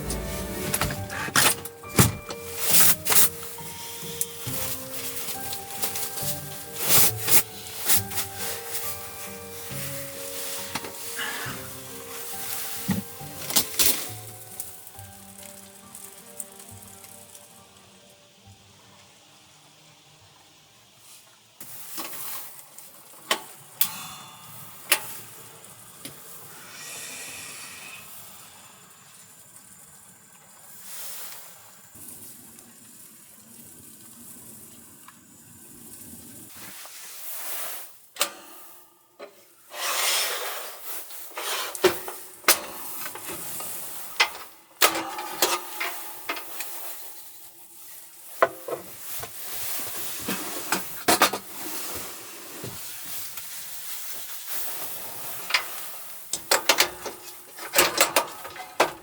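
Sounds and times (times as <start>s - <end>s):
food sizzling in a pan: 14.0s - 19.6s.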